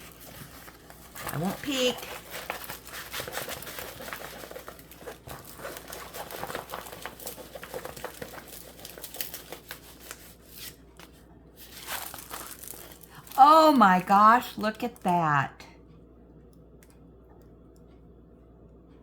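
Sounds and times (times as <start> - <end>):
plastic-covered canvas crinkling: 0.0 - 14.1.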